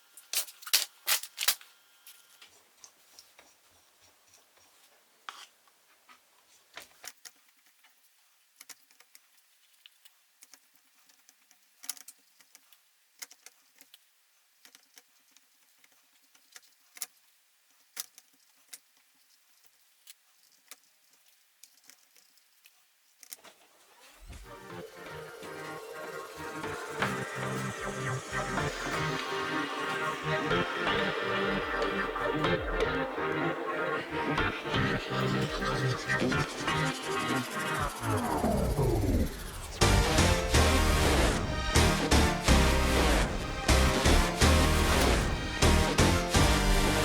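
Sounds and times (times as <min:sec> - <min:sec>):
small parts clicking and tapping: 0:06.8 - 0:23.5.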